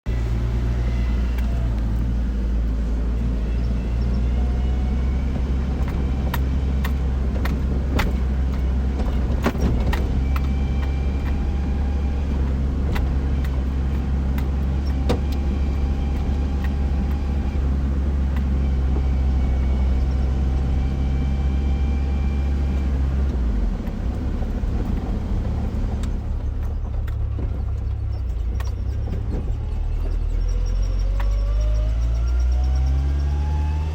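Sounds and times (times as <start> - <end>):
engine and road drone: 0.1 - 33.9
rattles and clicks: 5.4 - 19.1, 23.8 - 31.6.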